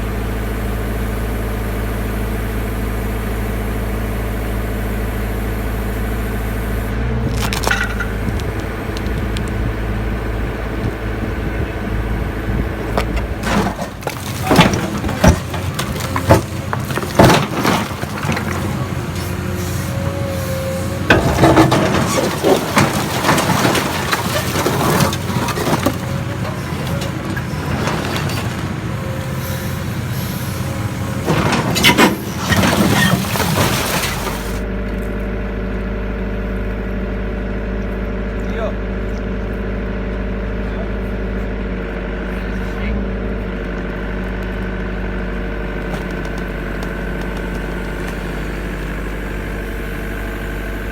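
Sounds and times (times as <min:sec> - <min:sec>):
engine running: 0:00.0 - 0:50.9
concrete cracking and breaking: 0:07.3 - 0:09.6, 0:12.8 - 0:34.6.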